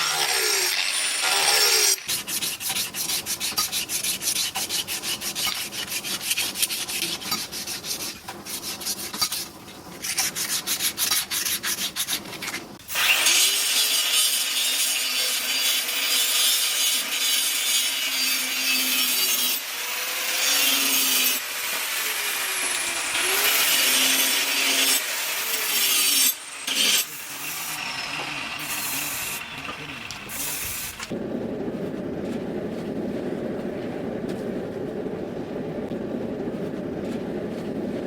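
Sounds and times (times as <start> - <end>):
rasping strokes on knife: 0.0 - 12.8
grinder grinding hiss: 12.8 - 31.1.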